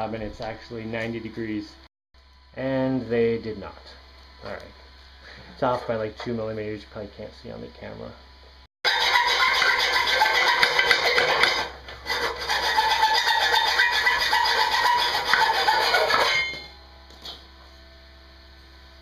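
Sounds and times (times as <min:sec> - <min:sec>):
abrasive tool rasping steel: 0:08.8 - 0:16.8.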